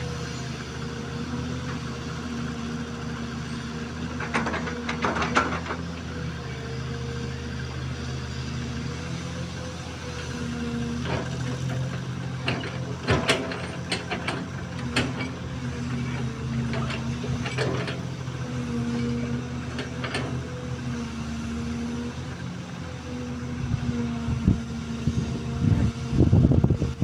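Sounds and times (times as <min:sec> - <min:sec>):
excavator diesel engine running: 0:00.0 - 0:27.0
sharp metal knocks and clanks: 0:11.9 - 0:15.4.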